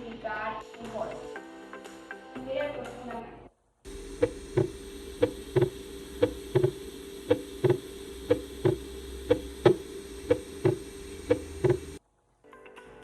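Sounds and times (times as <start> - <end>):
faint steady hum: 3.9 - 12.0
heartbeat through stethoscope: 3.9 - 12.0.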